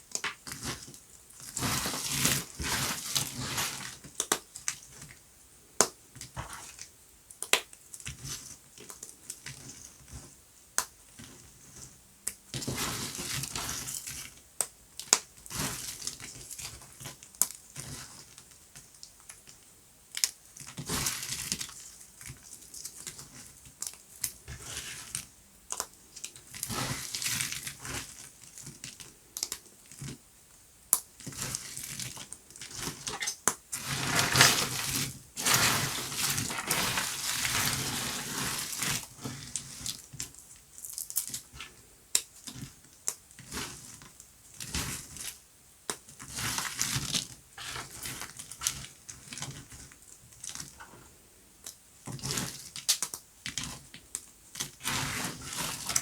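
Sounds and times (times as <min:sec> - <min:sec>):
sharp cracks and snaps: 0:07.3 - 0:08.0, 0:52.8 - 0:53.2
soap crunching and crumbling: 0:30.9 - 0:50.7.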